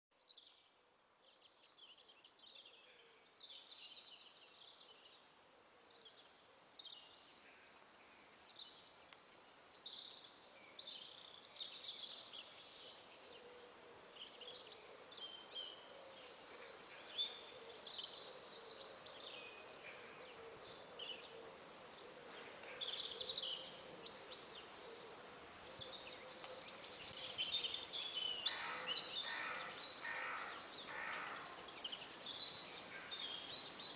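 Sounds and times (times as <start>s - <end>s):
songbirds chirping and trilling: 0.1s - 33.9s
soft outdoor hiss: 0.2s - 33.9s.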